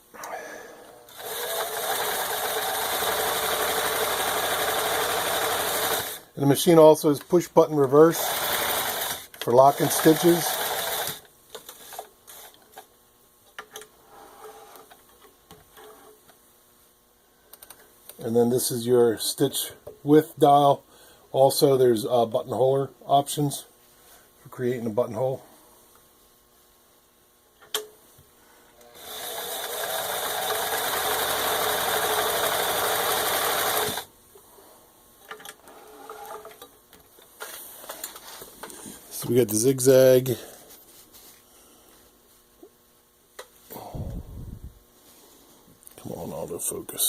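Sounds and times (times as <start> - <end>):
sewing machine running: 1.1 - 6.3, 8.0 - 12.5, 28.9 - 34.1
soft rustle: 40.5 - 42.6.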